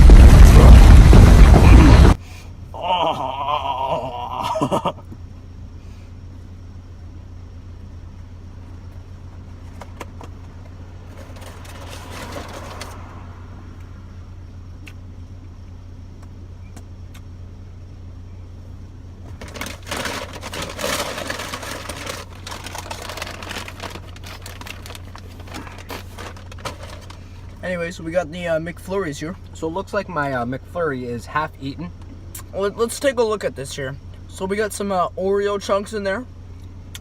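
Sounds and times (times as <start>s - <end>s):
car engine idling: 3.9s - 37.0s
food packaging rustling: 19.3s - 27.2s.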